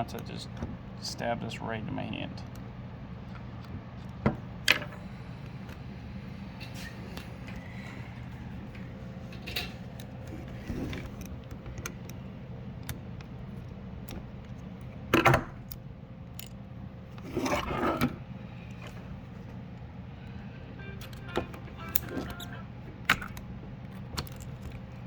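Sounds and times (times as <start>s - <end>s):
steady low hum: 0.0s - 25.0s
plastic parts clicking and rattling: 8.6s - 16.6s, 21.0s - 25.0s.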